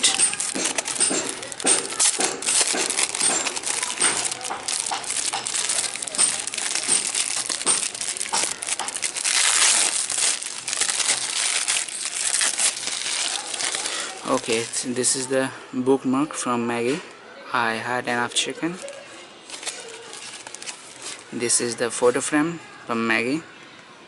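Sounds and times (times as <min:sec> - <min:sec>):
packaging crinkling: 0:00.0 - 0:14.9, 0:18.7 - 0:21.6.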